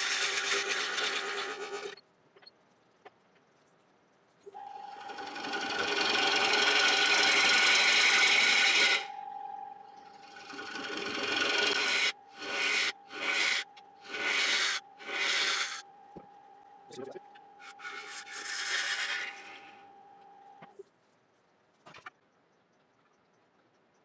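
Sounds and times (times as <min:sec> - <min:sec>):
turning tool rasping scrape: 0:00.0 - 0:02.0, 0:04.9 - 0:09.2, 0:10.0 - 0:15.8, 0:17.6 - 0:19.9
wood lathe hum and whine: 0:00.0 - 0:02.0, 0:04.5 - 0:20.7.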